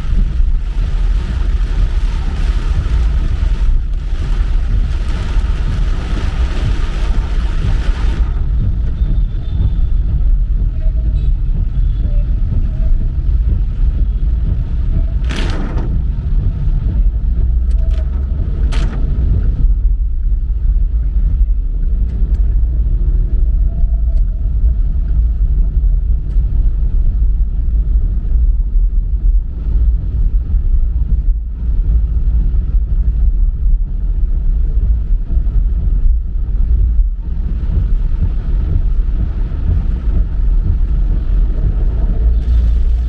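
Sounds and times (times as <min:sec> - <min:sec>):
car road and engine rumble: 0:00.0 - 0:43.0.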